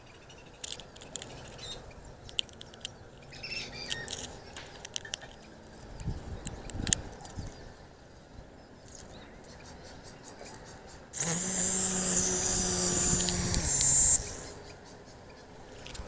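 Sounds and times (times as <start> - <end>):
toy helicopter motor whine: 11.2 - 14.8.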